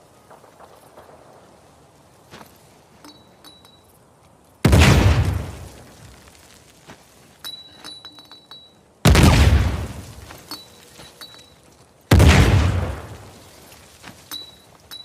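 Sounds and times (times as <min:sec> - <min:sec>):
debris clinking and tinkling: 0:03.0 - 0:04.0, 0:07.2 - 0:09.0, 0:09.9 - 0:12.0, 0:13.1 - 0:15.0
deep explosion blasts: 0:04.6 - 0:05.8, 0:09.1 - 0:10.1, 0:12.1 - 0:13.3.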